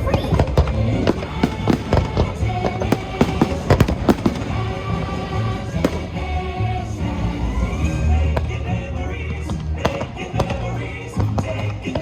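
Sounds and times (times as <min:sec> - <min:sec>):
fireworks bangs: 0:00.0 - 0:06.4
music soundtrack: 0:00.0 - 0:12.0.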